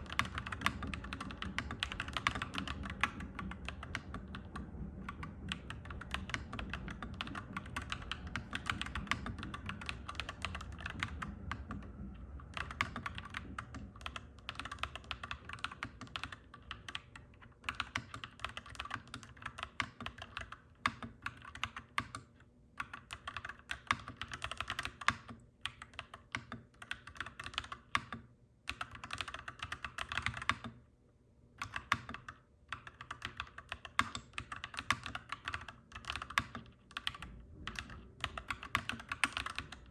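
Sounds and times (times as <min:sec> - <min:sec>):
low rumble: 0:00.0 - 0:14.3
mechanical keyboard typing: 0:00.0 - 0:30.8, 0:31.6 - 0:39.9.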